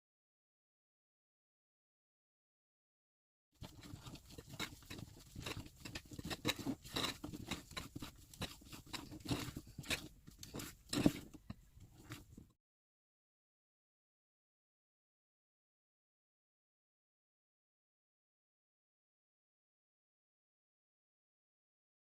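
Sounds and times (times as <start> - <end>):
spatula scraping mixing bowl: 3.6 - 12.5.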